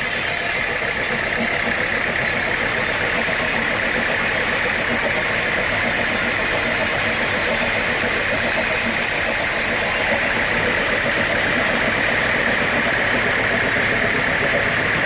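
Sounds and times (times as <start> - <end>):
sawmill machinery droning: 0.0 - 15.0.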